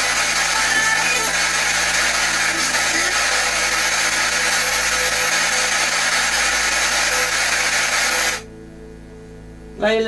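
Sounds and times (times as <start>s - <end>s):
loud radio static hiss: 0.0s - 8.5s.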